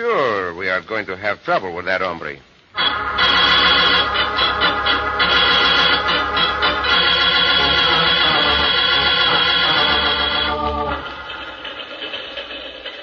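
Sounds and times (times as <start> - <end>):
sustained organ chords: 2.7 - 11.9.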